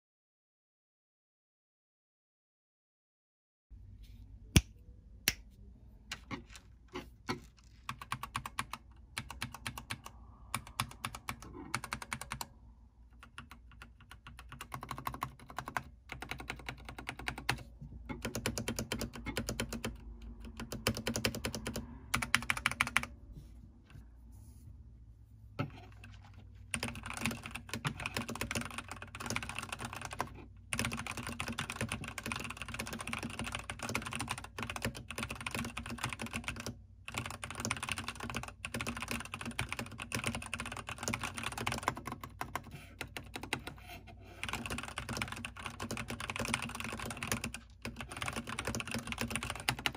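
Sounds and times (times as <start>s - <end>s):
mechanical keyboard typing: 7.7s - 23.1s, 26.0s - 43.8s, 44.4s - 49.9s.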